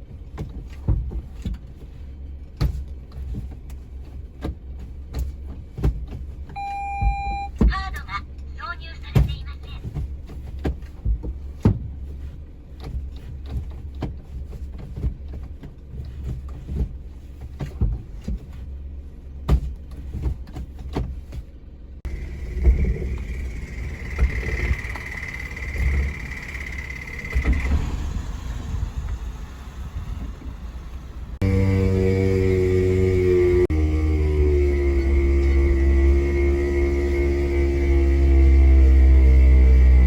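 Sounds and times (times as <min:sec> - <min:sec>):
drivetrain knocks and clunks: 0:00.0 - 0:18.8, 0:19.4 - 0:31.5
van driving with low rumble: 0:00.0 - 0:40.0
high whine: 0:22.1 - 0:37.9.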